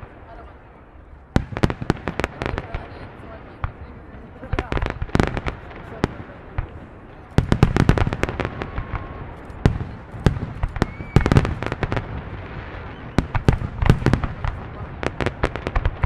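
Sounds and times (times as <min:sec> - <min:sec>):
fireworks bangs and cracks: 0:01.3 - 0:16.0
whistle of rising shell: 0:10.7 - 0:11.6, 0:12.8 - 0:13.4.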